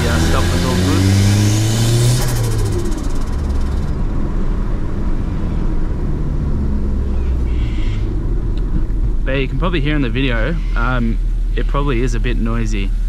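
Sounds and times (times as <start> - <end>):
car engine revs dropping: 0.0 - 4.1.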